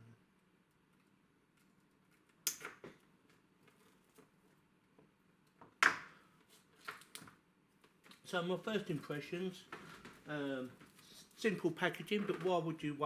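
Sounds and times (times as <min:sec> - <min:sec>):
plastic clips snipped: 0:02.5 - 0:02.8
plastic snapping: 0:02.5 - 0:02.9.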